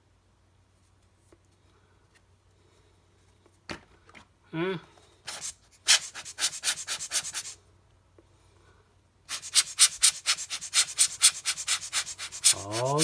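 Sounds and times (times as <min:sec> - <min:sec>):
rubbing strokes on glass lens: 0:05.3 - 0:07.6, 0:09.3 - 0:13.0.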